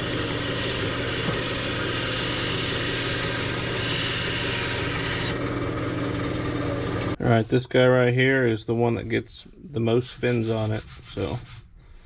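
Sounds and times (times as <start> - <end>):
power saw cutting wood: 0.0 - 7.2.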